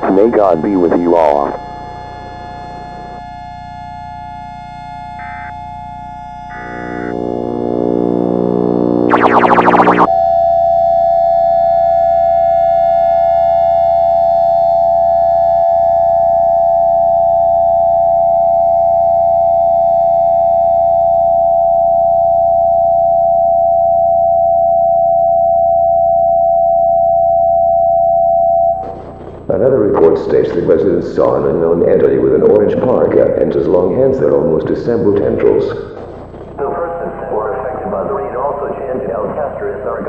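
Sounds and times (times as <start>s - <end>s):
harsh electronic burst: 9.1s - 10.1s
two-tone emergency alert signal: 9.1s - 29.0s.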